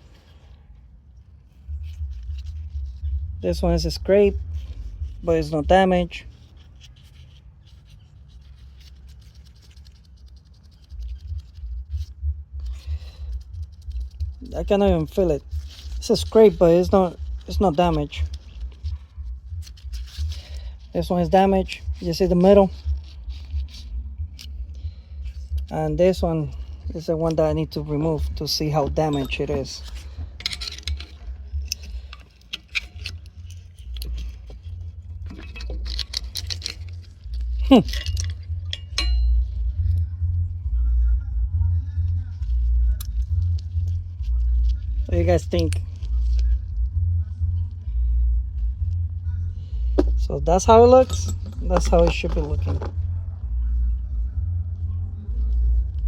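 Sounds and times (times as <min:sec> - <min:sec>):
phone handling rumble and bumps: 0:10.8 - 0:40.0, 0:49.8 - 0:53.2
metal engine parts clinking: 0:28.4 - 0:39.5, 0:50.0 - 0:52.9.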